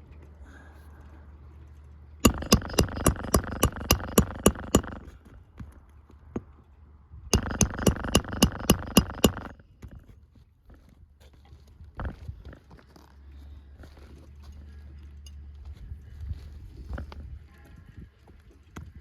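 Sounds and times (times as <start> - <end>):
hammer striking shingle roof: 2.2 - 5.1, 7.4 - 9.6.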